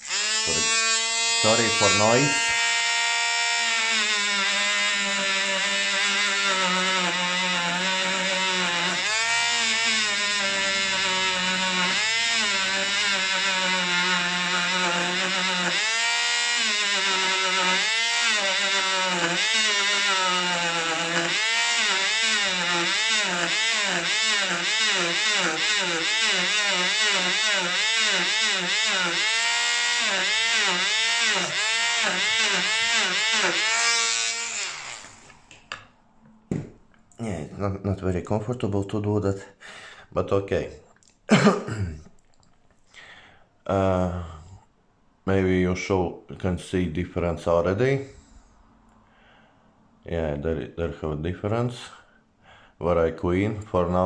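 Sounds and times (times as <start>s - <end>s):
rotary tool grinding metal: 0.0s - 35.5s.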